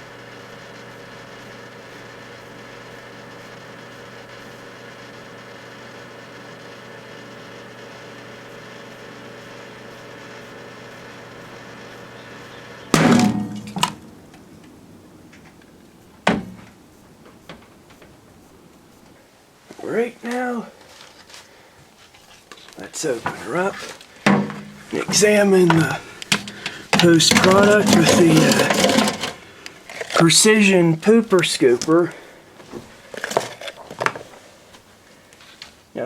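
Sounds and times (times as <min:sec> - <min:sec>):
microwave oven humming: 0:00.0 - 0:17.6
bottle bursting with loud bang: 0:12.9 - 0:14.0
sharp knock: 0:12.9 - 0:14.0.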